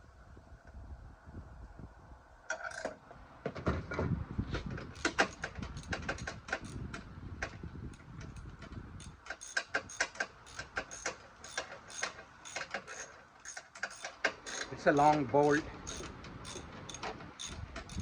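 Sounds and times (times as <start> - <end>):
ratchet wrench clicking: 4.9 - 7.0, 7.9 - 18.0.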